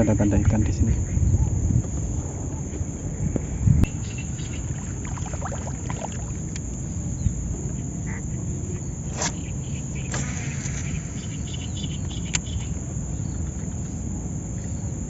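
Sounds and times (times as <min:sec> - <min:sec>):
wind: 0:00.0 - 0:15.0
lake water around a boat: 0:03.9 - 0:14.9
faint chirps: 0:03.9 - 0:15.0.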